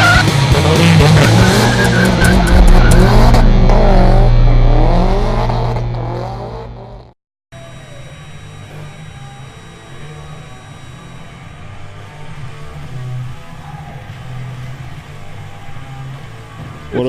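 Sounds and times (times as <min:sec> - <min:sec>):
car engine at high revs: 0:00.0 - 0:07.1.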